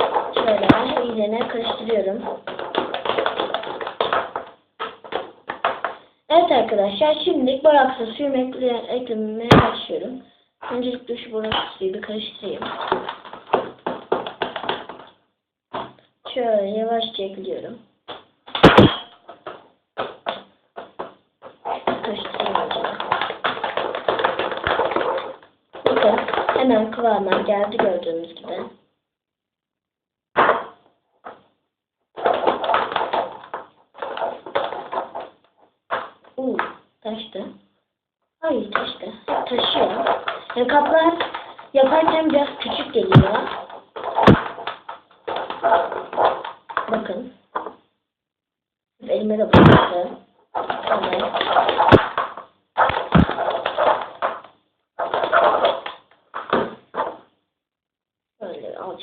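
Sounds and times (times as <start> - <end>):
slime squelching and crackling: 0.0 - 6.1, 18.1 - 27.8, 32.2 - 36.8, 38.5 - 47.7, 49.5 - 57.3
slime being squished: 49.6 - 57.2.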